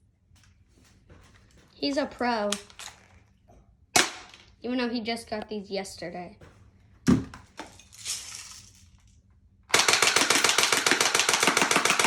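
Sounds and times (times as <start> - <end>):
airsoft gun rapid firing: 9.7 - 12.0.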